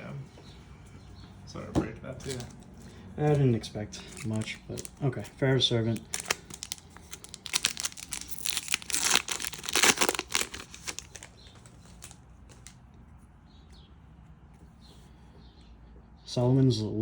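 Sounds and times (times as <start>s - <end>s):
cards ticking: 2.1s - 13.0s
foil pack tearing and crinkling: 2.2s - 2.6s, 4.1s - 12.7s.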